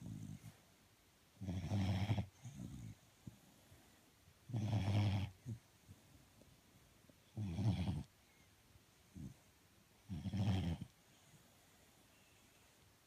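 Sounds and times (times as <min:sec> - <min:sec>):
dog snoring: 0:00.0 - 0:00.6, 0:01.4 - 0:03.0, 0:04.5 - 0:05.6, 0:07.3 - 0:08.1, 0:10.0 - 0:11.0.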